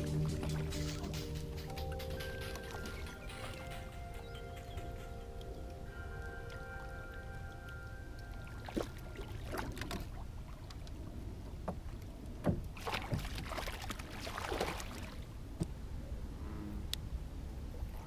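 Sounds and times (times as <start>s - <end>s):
low rumble: 0.0s - 9.6s.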